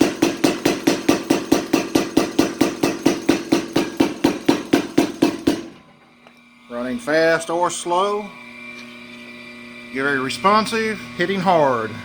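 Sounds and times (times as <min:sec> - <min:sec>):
power hammer striking metal: 0:00.0 - 0:05.8.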